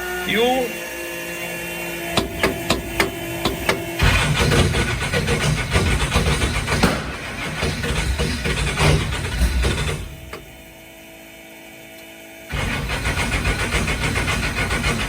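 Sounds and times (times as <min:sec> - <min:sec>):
loud rough truck engine: 0:02.0 - 0:10.8, 0:12.5 - 0:15.0.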